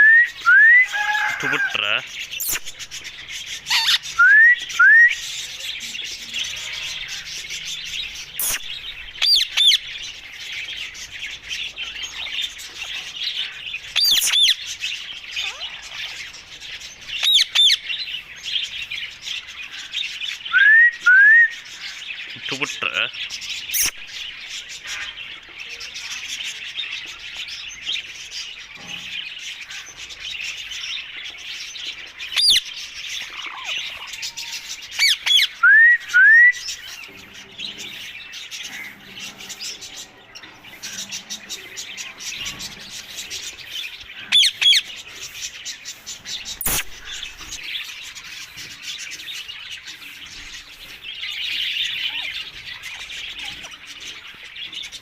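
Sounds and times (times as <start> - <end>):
parakeets chirping chatter: 0.9 - 4.2, 5.2 - 20.5, 21.6 - 35.6, 36.6 - 55.0
parakeet screeches: 3.7 - 4.0.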